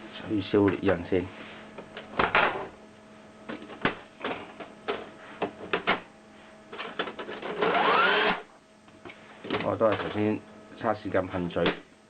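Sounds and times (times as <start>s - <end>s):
motor whirring rising pitch: 7.4s - 8.5s.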